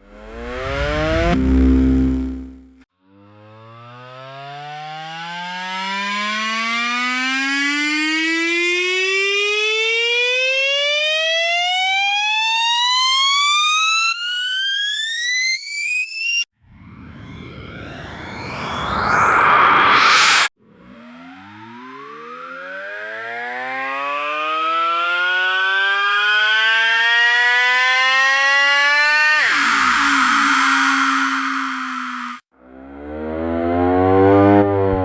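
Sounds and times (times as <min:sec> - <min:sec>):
electric drive whine rising: 0:00.0 - 0:02.8, 0:16.7 - 0:35.0
rushing noise: 0:16.7 - 0:20.5, 0:29.4 - 0:32.4.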